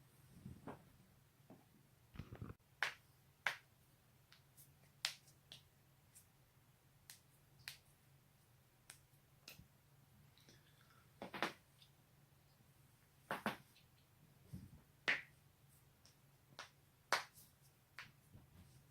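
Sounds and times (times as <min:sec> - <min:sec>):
neck joints popping and cracking: 0:02.2 - 0:02.6.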